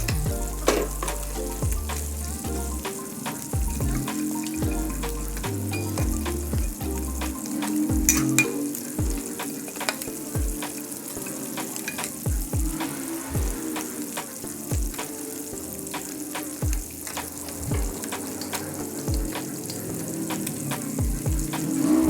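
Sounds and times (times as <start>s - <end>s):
background music with thumping beat: 0.0s - 8.4s, 9.0s - 10.8s, 11.6s - 15.2s, 15.9s - 19.6s, 20.2s - 22.0s
food sizzling in a pan: 7.4s - 22.0s.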